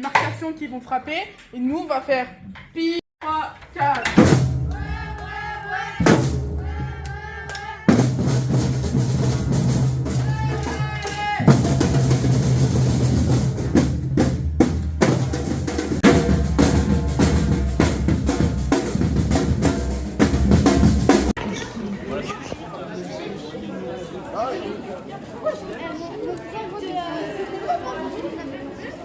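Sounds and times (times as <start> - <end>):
hand drums: 3.7 - 21.4
snare drum: 3.8 - 21.4
deep bass drums: 4.2 - 21.3.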